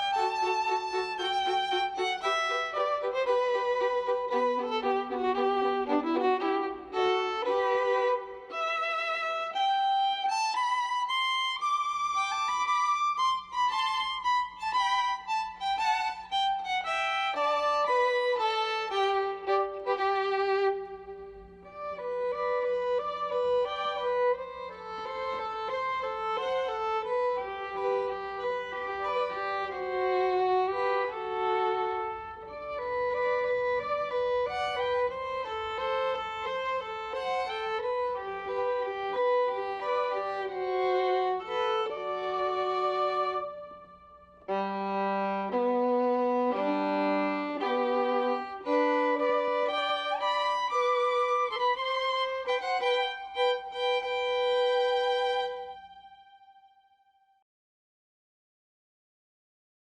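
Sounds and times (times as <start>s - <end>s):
violin melody with vibrato: 0.0s - 57.0s.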